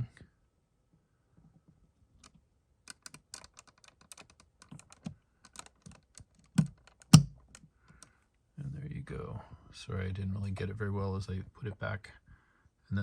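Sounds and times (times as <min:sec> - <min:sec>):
plastic vent parts clicking: 0:02.2 - 0:08.1.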